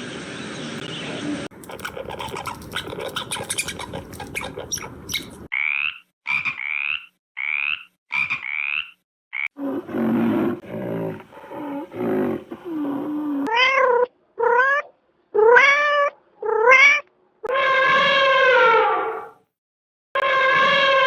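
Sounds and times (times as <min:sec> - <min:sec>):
low rough animal sound: 0:01.6 - 0:05.4
animal calls: 0:01.6 - 0:08.4
long drawn-out wail: 0:20.2 - 0:21.0.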